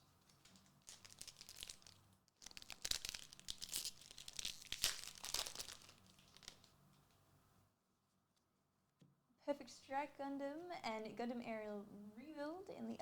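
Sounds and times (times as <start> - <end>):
foil wrapper crinkling: 0.2 - 6.8.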